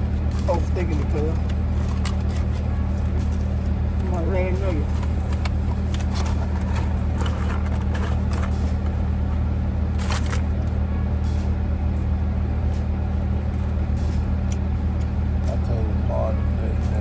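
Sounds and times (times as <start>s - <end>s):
car engine idling: 0.0s - 17.0s
light clicks and scrapes: 4.8s - 9.0s.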